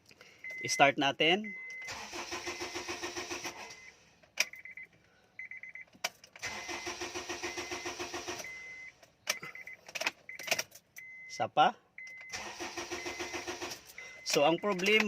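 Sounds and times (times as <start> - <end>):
car engine cranking: 1.5 - 11.3, 12.0 - 15.0
rapid electronic beeping: 14.0 - 15.0
clicks: 14.2 - 15.0.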